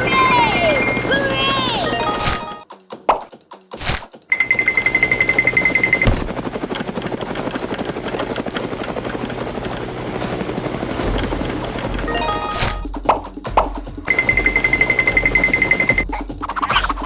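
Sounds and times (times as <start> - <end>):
high beeping tone: 0.0 - 2.6, 12.1 - 12.8
helicopter rotor chop: 0.0 - 17.0.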